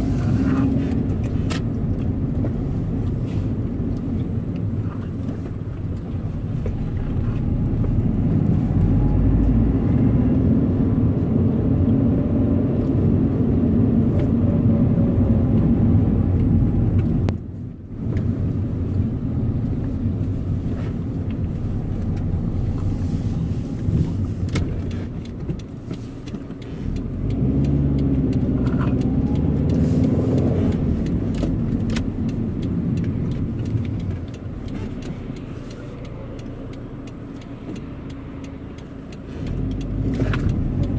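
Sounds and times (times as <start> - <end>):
car engine revving: 0.0 - 5.5, 18.4 - 40.9.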